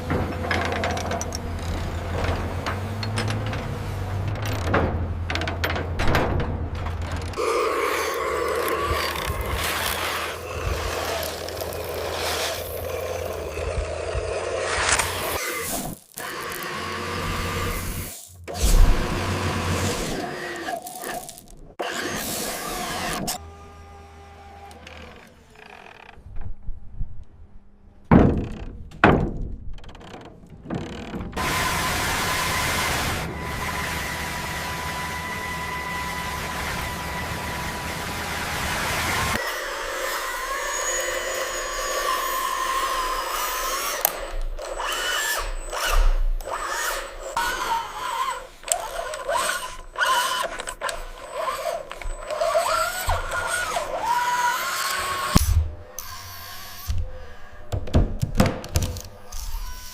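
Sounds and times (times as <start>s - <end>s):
heavy clunks: 0.0s - 7.4s, 28.1s - 31.4s
small electric motors whining: 7.4s - 26.2s, 31.4s - 57.8s, 58.8s - 59.9s
small mechanical clicks: 41.9s - 56.9s.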